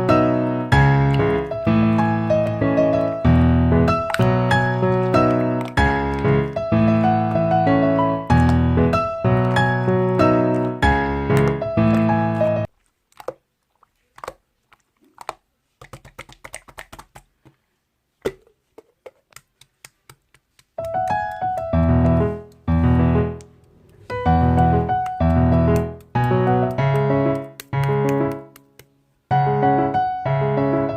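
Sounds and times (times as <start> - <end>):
piano music: 0.0 - 12.7, 20.8 - 30.9.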